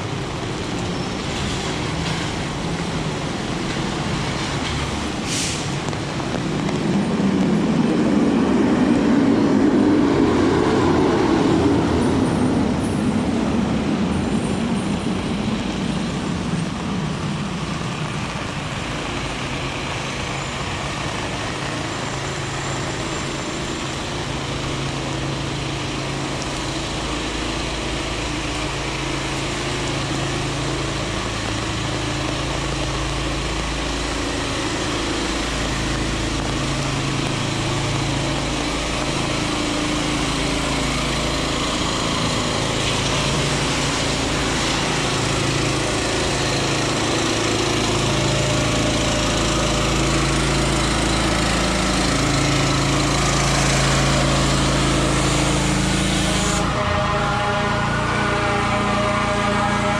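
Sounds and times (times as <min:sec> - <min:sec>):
heavy rain on street: 0:00.0 - 0:59.9
vehicle engine humming: 0:00.0 - 0:59.9.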